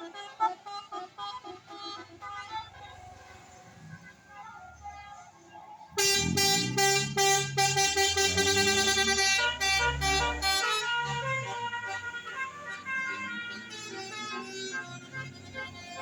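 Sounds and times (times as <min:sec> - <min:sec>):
vehicle engine rumble: 0:01.0 - 0:16.0
multi-tone musical air horn: 0:05.9 - 0:16.0.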